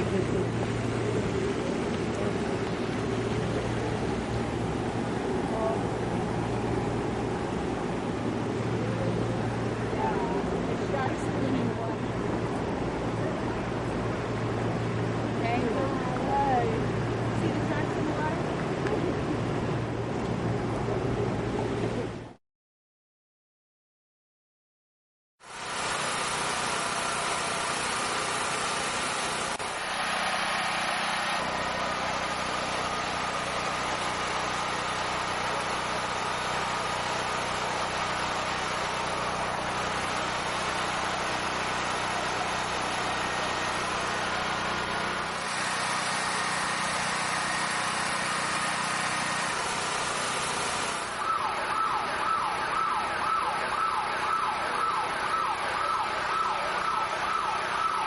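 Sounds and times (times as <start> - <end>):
fast yelping siren: 51.2 - 58.0.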